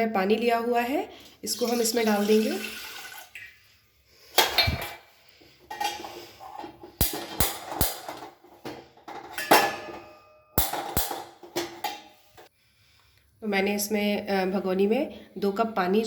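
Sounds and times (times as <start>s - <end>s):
metal clanking on steel pot: 4.4s - 5.0s, 5.6s - 12.2s.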